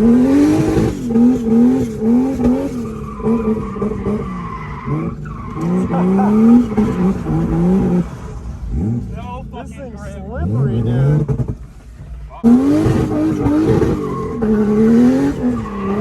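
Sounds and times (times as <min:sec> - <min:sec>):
car engine revving: 0:00.0 - 0:16.0
tyre squeal: 0:02.4 - 0:08.0.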